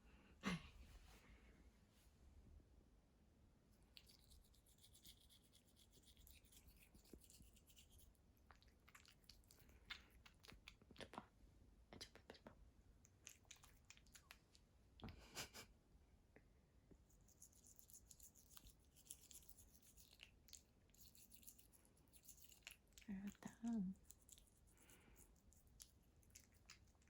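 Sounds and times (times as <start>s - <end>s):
toothbrush scrubbing teeth: 3.9s - 11.2s, 17.0s - 27.0s.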